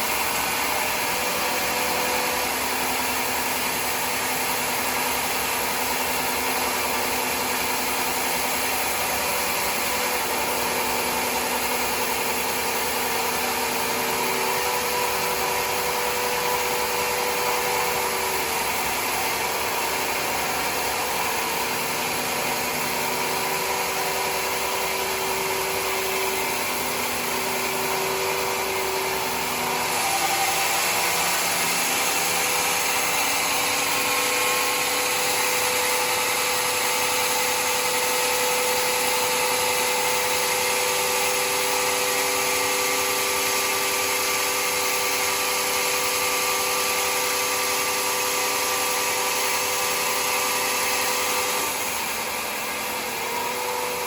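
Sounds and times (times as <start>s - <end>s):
saw cutting wood hiss: 0.0s - 54.0s
sawmill machine hum: 0.0s - 54.0s.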